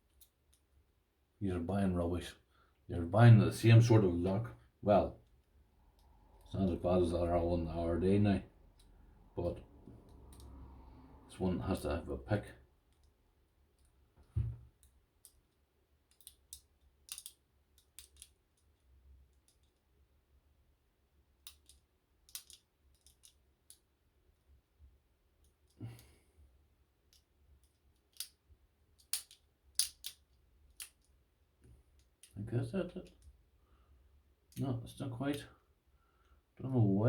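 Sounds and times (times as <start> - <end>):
lock pick clicking in lock: 16.1 - 18.4, 21.4 - 23.4, 29.0 - 31.1.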